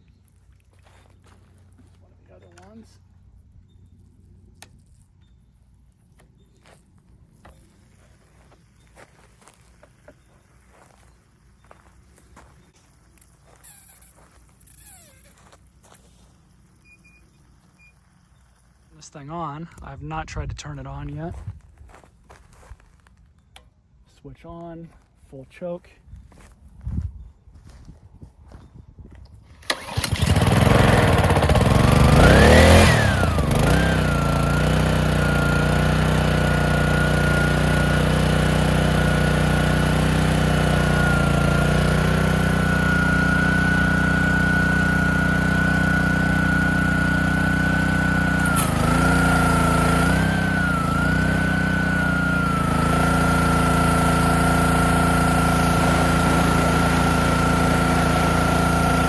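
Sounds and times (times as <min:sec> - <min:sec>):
engine running with high whine: 0:28.5 - 0:59.0
pressure washer engine pull-start: 0:29.5 - 0:59.0.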